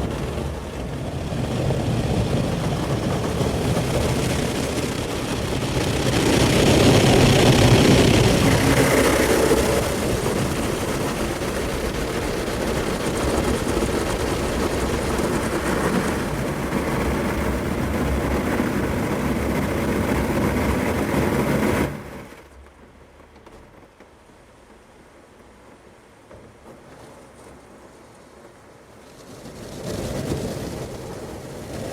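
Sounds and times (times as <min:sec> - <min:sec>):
car wash spray and machinery: 0:00.0 - 0:22.6.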